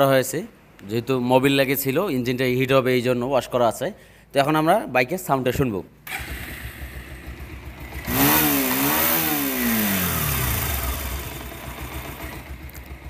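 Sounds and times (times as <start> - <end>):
motorcycle engine idling and revving: 6.1 - 13.0.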